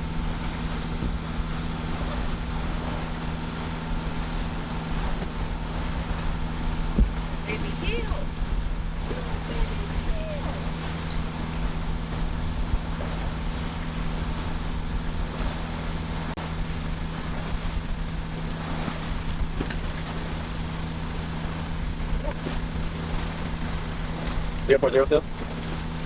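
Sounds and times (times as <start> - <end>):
boat engine humming: 0.0 - 26.0
water rushing past hull: 0.0 - 26.0
wind noise on microphone: 0.0 - 26.0.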